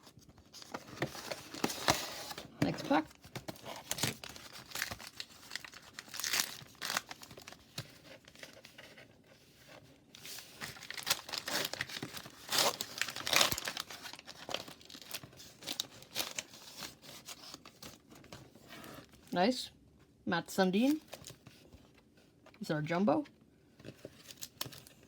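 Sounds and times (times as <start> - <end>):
card pack wrapper crinkling: 0.6 - 8.6, 10.2 - 18.0, 24.0 - 25.0.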